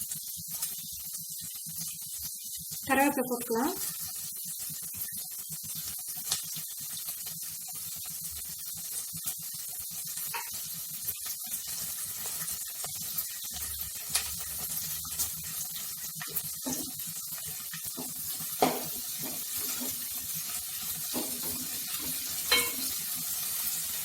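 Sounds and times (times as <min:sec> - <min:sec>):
onions sizzling in oil: 0:00.0 - 0:24.0
spoon clicking against pan: 0:21.1 - 0:23.0.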